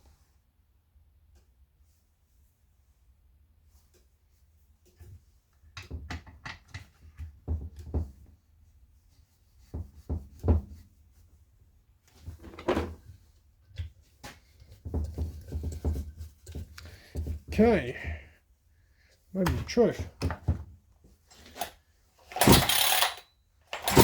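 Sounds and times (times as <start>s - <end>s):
chainsaw recoil starter pulls: 21.3s - 24.0s.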